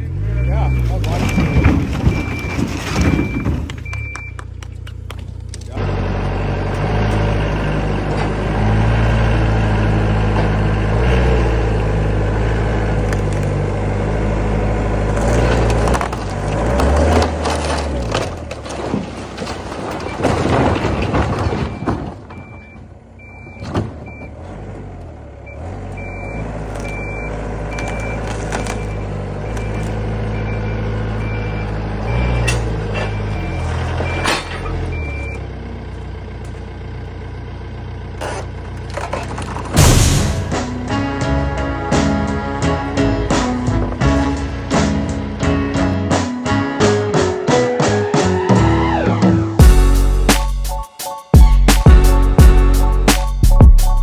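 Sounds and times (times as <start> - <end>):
heavy equipment engine running: 0.0 - 46.4
reversing alarm beeping: 0.1 - 4.4, 21.7 - 24.4, 25.4 - 35.4
debris crunching and crashing: 0.4 - 5.7, 15.0 - 23.0, 38.8 - 40.9.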